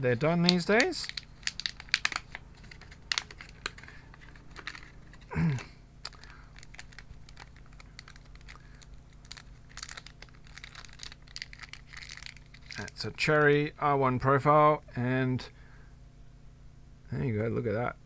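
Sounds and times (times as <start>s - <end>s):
plastic bags crinkling: 0.0s - 13.1s.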